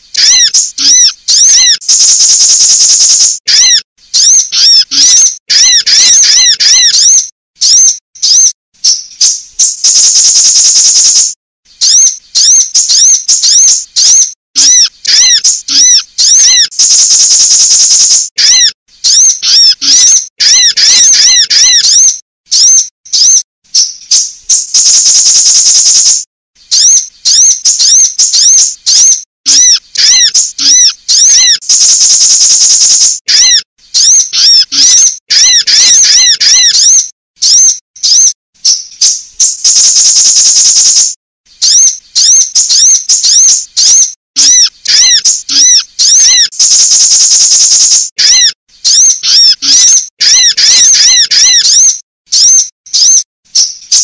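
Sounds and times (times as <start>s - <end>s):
sunbird chirping: 0.0s - 41.0s, 41.6s - 54.0s
high buzzy bird trill: 0.0s - 54.0s.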